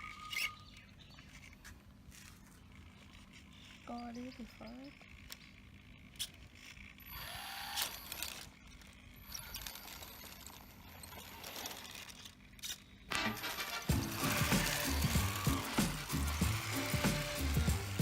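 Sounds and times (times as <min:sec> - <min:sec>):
toy car motor whirring: 0:00.0 - 0:18.0
rising motor whine: 0:13.3 - 0:18.0.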